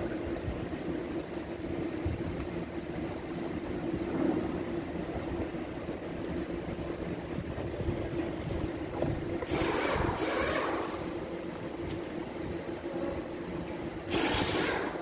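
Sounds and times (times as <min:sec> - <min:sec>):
steady machine hum: 0:00.0 - 0:15.0.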